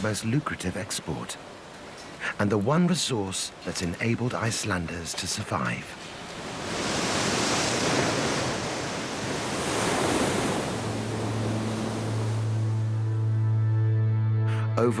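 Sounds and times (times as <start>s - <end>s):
sea waves breaking: 0.0s - 13.0s
low musical drone: 10.9s - 15.0s.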